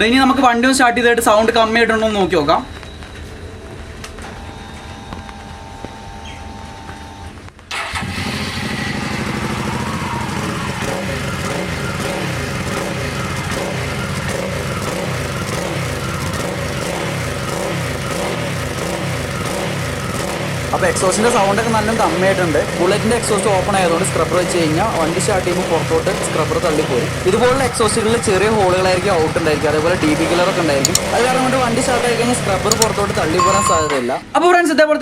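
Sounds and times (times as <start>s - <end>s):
motorcycle engine idling: 7.7s - 34.1s.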